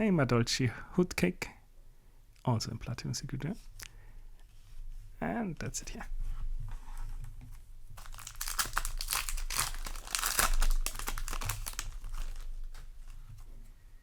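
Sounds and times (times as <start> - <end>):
foil wrapper crinkling and tearing: 8.0 - 13.1.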